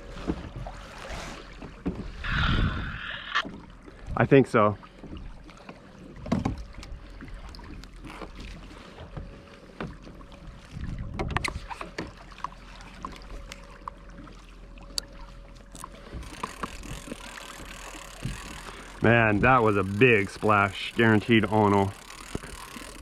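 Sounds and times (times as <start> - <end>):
water lapping against a kayak hull: 0.0 - 23.0
wind on microphone: 2.1 - 3.4, 10.7 - 11.7.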